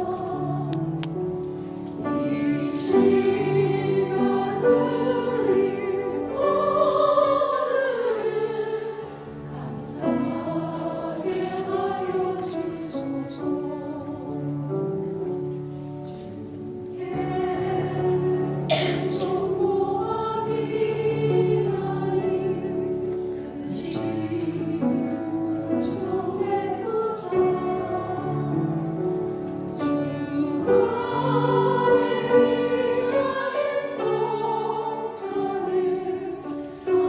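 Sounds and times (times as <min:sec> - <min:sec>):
church choir singing a hymn: 0:00.0 - 0:37.0.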